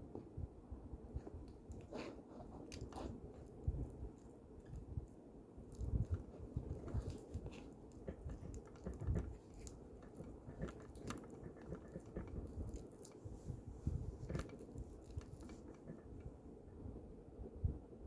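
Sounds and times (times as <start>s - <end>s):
slime squelching: 1.5s - 16.2s
sticky clicks and crackles: 2.6s - 13.3s, 14.2s - 16.3s.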